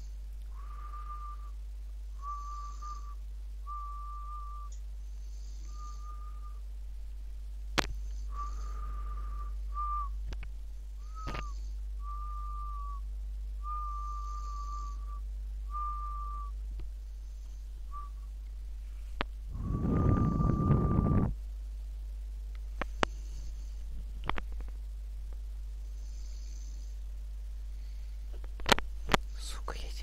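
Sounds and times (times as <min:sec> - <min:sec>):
whistling nose snoring: 0:00.5 - 0:01.6, 0:02.2 - 0:06.6, 0:08.1 - 0:10.2, 0:11.0 - 0:13.0, 0:13.6 - 0:16.6, 0:17.3 - 0:18.3, 0:19.6 - 0:21.3, 0:26.0 - 0:26.9.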